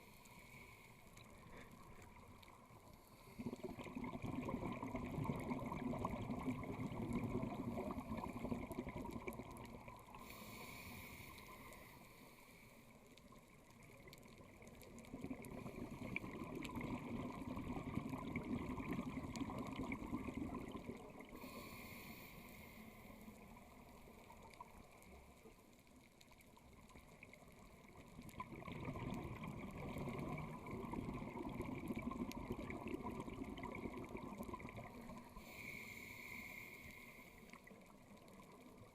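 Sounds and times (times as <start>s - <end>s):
regulator inhale hiss: 0.0s - 2.1s, 2.9s - 3.7s, 10.1s - 13.1s, 21.2s - 24.1s, 35.0s - 37.8s
bubbling exhaled air: 3.2s - 11.7s, 15.1s - 23.1s, 28.3s - 37.7s.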